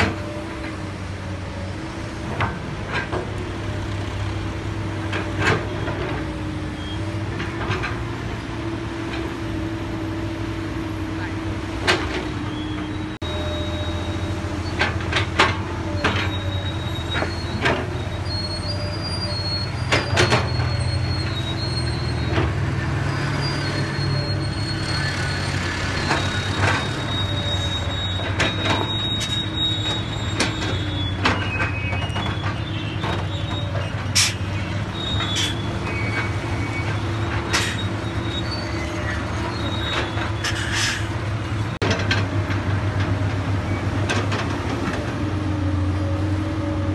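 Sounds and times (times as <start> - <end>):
diesel engine droning: 0.0 - 46.9
thin high machinery squeals: 6.7 - 7.1, 12.2 - 15.1, 15.8 - 41.2.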